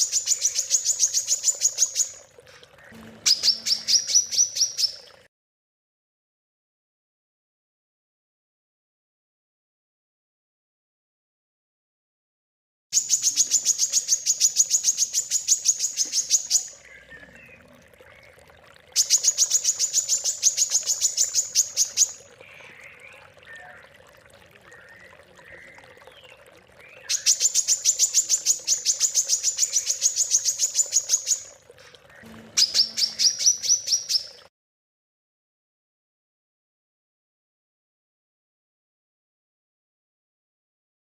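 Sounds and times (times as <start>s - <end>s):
faint bird chirps: 0.0s - 5.1s, 13.0s - 34.5s
songbird rapid high-pitched notes: 3.2s - 5.0s, 32.5s - 34.4s
faint hum: 32.0s - 33.3s.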